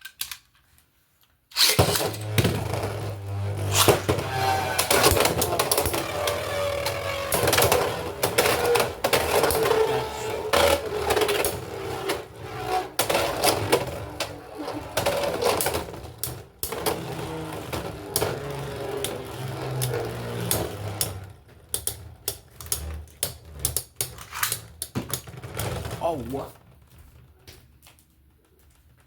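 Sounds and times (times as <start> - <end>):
spinning top whirring: 1.6 - 22.5.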